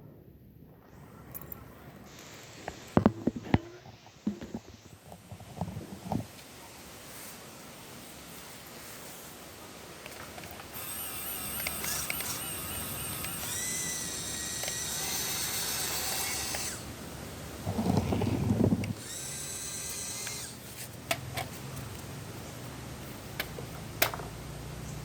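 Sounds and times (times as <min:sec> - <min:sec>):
small electric motors whining: 0:10.7 - 0:17.0, 0:17.6 - 0:20.9.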